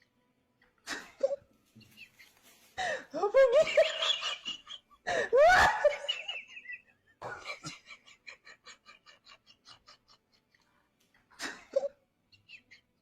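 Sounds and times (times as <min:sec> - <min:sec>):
person laughing: 0:02.8 - 0:10.7.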